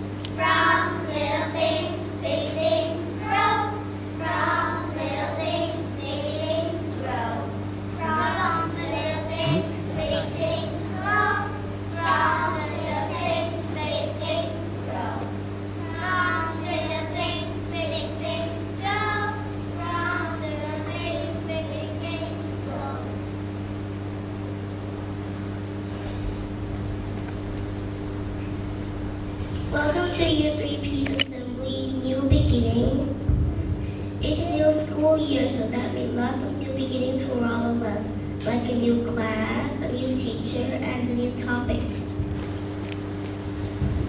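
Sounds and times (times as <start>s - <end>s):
children singing together: 0.4s - 7.0s, 8.0s - 14.8s, 15.8s - 21.5s
children singing: 9.4s - 10.4s
low hum: 21.7s - 44.0s.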